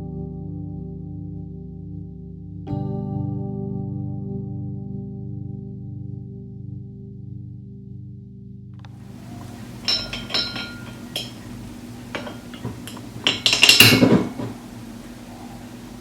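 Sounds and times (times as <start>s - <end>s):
cutlery and dishes clinking: 9.0s - 14.6s.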